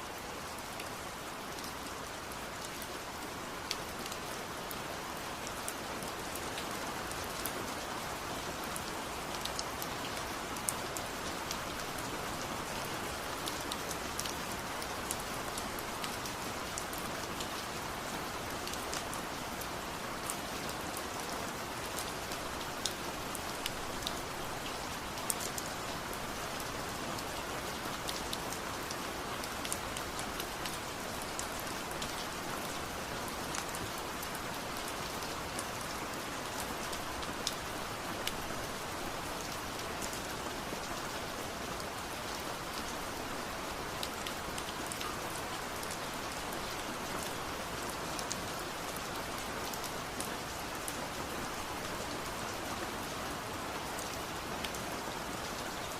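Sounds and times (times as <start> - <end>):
rain on hard surfaces: 0.0 - 55.9.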